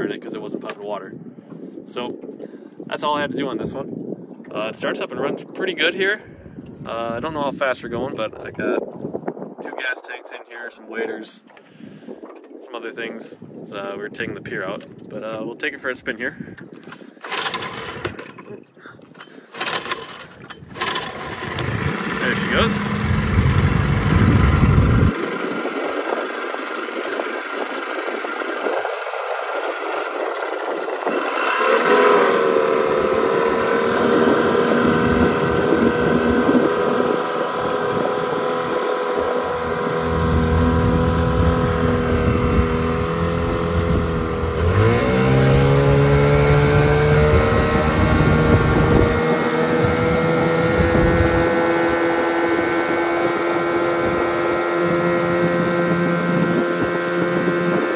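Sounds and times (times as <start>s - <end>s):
outboard motor running: 16.5s - 57.9s.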